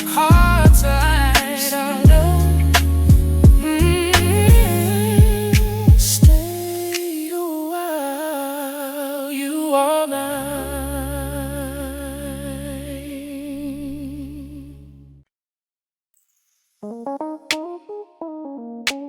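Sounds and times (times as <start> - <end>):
sustained low chord: 0.3 - 1.4, 2.0 - 5.9, 10.4 - 15.2.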